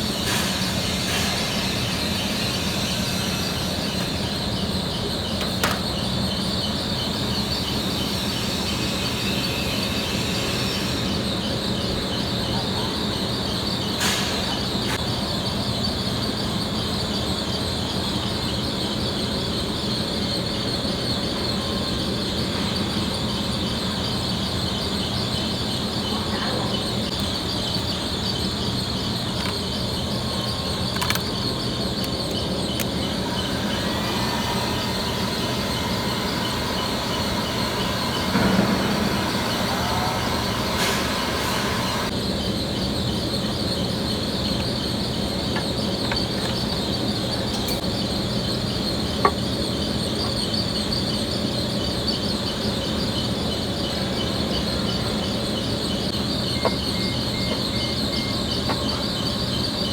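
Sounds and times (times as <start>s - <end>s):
background hiss and hum: 21.3s - 59.9s.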